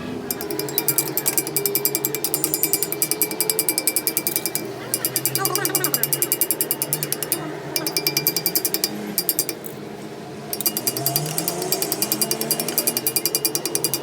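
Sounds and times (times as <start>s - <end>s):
rapid mechanical clicking: 0.2s - 14.0s.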